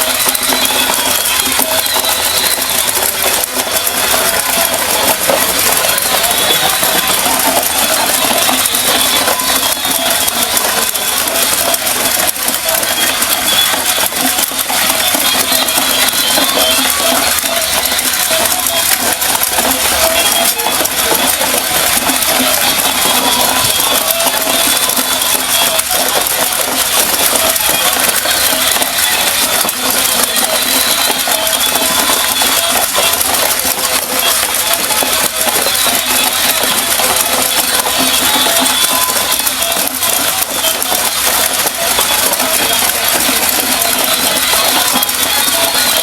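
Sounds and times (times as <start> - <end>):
rapid clicking and rattling: 0.0 - 46.0
toy motor and gears whirring: 0.0 - 46.0.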